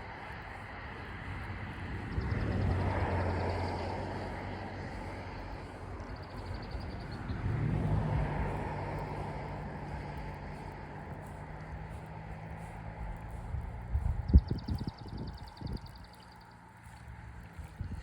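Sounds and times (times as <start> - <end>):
vehicles passing on road: 0.0 - 18.0.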